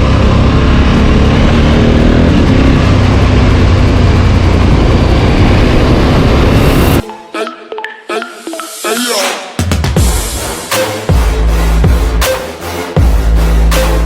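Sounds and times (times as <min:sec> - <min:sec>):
loud steady rushing noise: 0:00.0 - 0:07.0
motorcycle engine running: 0:00.0 - 0:07.0.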